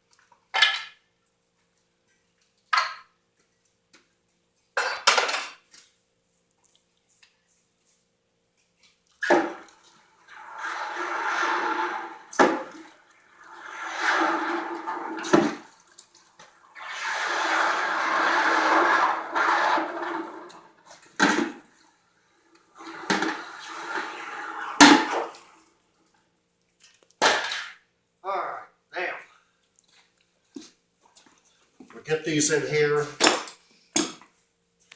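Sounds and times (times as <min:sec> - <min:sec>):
hot metal hissing in water: 0:09.3 - 0:15.9, 0:16.6 - 0:20.8, 0:22.8 - 0:25.6.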